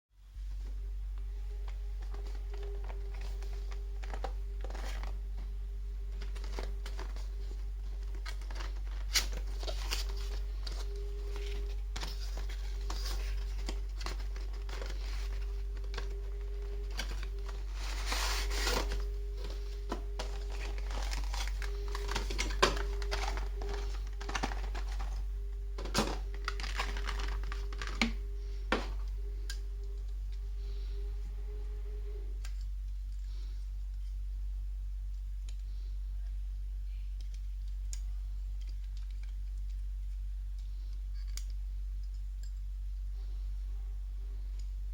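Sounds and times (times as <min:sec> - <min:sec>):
steady low hum: 0:00.1 - 0:44.9
plastic packaging crinkling: 0:01.5 - 0:29.1.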